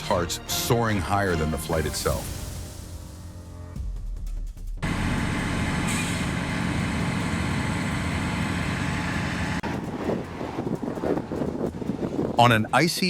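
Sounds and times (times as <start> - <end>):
rushing sound: 1.8 - 3.7, 4.8 - 12.0
vehicle engine noise: 4.8 - 12.4.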